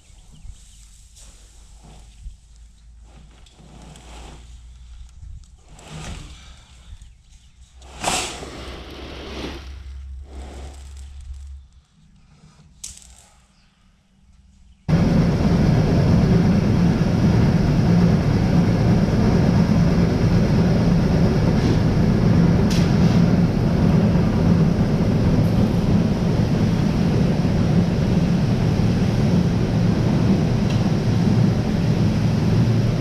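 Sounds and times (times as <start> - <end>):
auger machinery running: 14.9 - 33.0.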